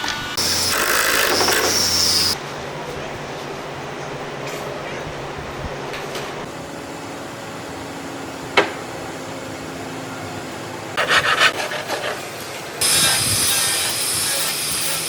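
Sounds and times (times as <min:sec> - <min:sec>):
loud steady hiss: 0:00.0 - 0:02.4, 0:12.6 - 0:15.0
wood scraping and clattering: 0:11.0 - 0:12.6.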